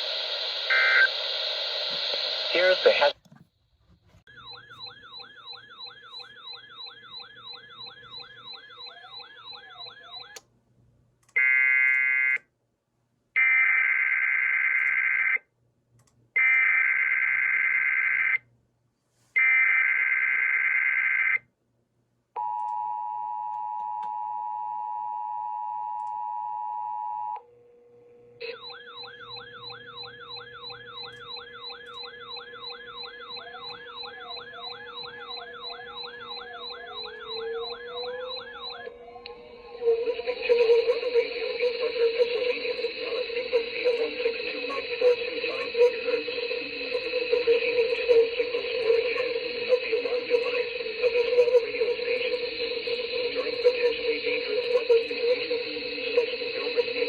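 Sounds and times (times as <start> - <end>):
buzzy data tone bursts: 0.0 - 3.2, 28.4 - 57.0
siren-like warbling tone: 4.3 - 10.4, 28.4 - 57.0.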